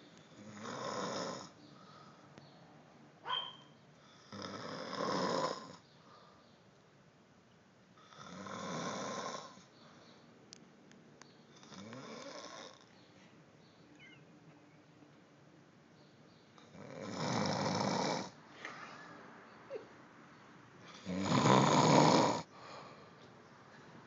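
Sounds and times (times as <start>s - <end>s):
snoring: 0.3s - 1.6s, 4.0s - 5.8s, 8.0s - 9.7s, 11.5s - 12.9s, 16.6s - 18.4s, 20.9s - 22.8s
short sharp squeak: 3.3s - 3.7s.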